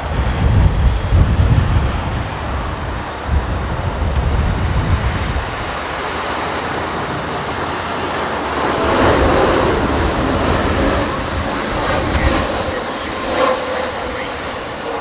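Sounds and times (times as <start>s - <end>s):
jet engines roaring: 0.0s - 15.0s
wind rumbling on microphone: 0.0s - 15.0s.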